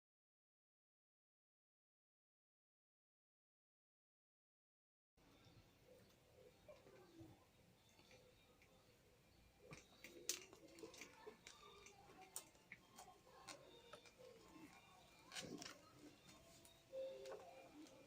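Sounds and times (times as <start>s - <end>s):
small parts and tools clicking: 9.6s - 18.0s.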